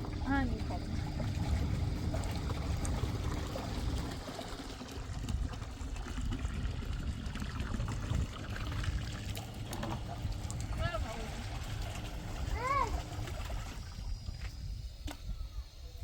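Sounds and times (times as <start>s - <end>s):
water pouring and trickling: 0.0s - 14.9s.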